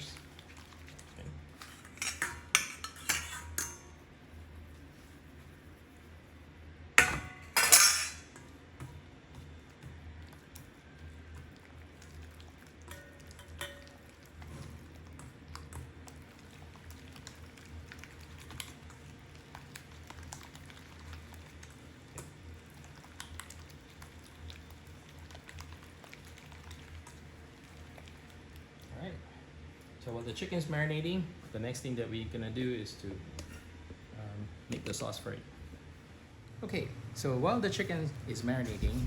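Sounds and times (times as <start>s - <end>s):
low steady hum: 0.0s - 39.0s
dishes and utensils clicking: 1.6s - 3.8s.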